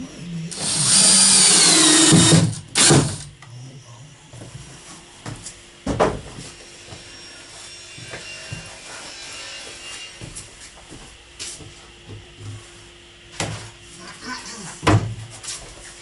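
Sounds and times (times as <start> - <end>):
power drill whirring: 0.5 - 3.3.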